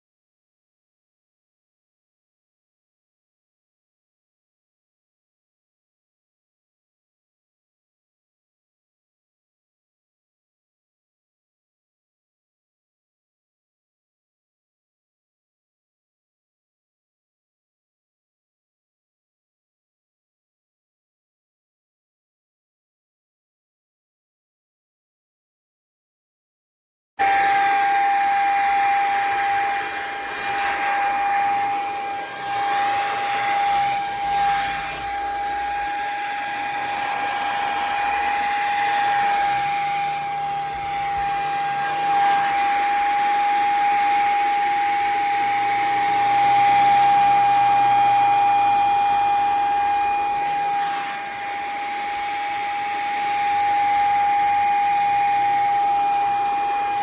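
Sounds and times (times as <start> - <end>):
handheld vacuum cleaner running: 27.2 - 57.0.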